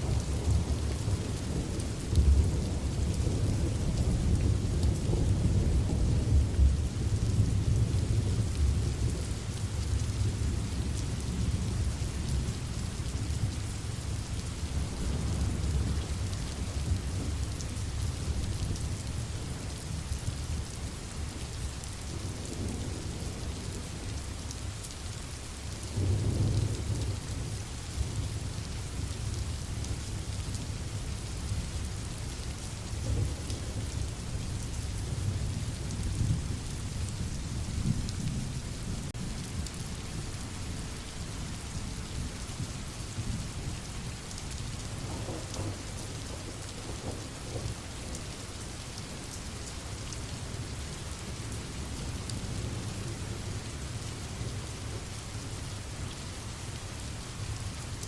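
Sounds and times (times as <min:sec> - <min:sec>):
low rolling thunder: 0:00.0 - 0:12.6, 0:14.4 - 0:19.8, 0:25.9 - 0:30.0, 0:32.9 - 0:39.7, 0:44.9 - 0:49.2
steady rain falling: 0:00.0 - 0:58.0.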